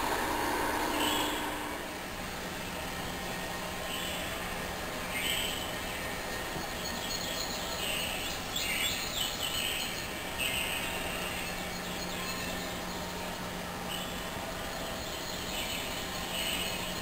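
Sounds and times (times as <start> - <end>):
low hum: 0.0 - 7.2.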